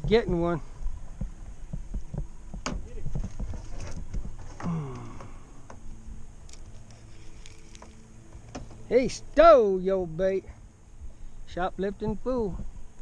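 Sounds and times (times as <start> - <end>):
knocks and thumps on a boat: 1.2 - 4.7.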